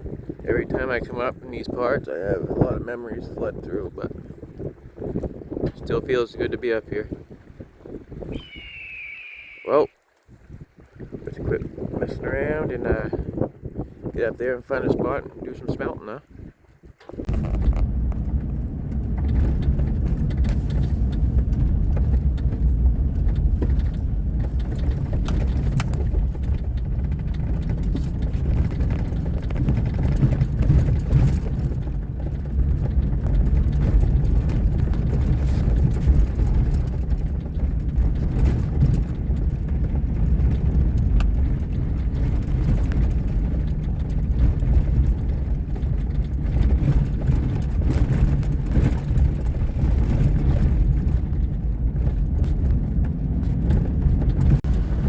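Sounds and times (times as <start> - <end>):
truck engine and road noise: 17.0 - 55.0.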